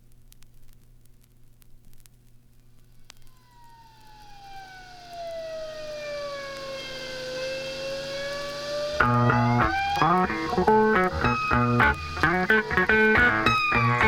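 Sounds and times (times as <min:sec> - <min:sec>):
siren-like gliding tone: 0:03.3 - 0:14.0
rock band with guitar and bass: 0:09.0 - 0:14.0.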